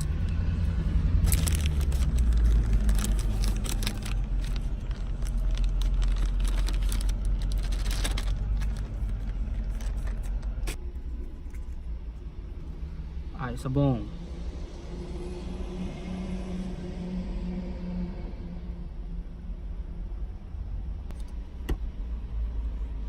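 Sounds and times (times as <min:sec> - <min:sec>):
steady low rumble: 0:00.0 - 0:23.0
plastic bag crinkling: 0:01.1 - 0:10.8.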